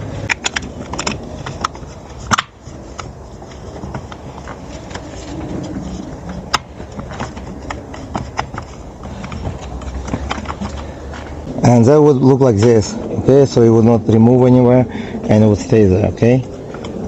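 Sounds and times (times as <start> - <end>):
plastic parts snapping together: 0.2 - 3.1.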